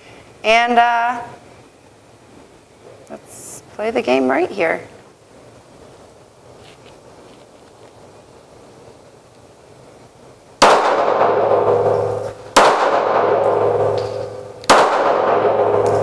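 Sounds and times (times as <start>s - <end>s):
handgun shots with ringing decay: 10.6s - 16.0s.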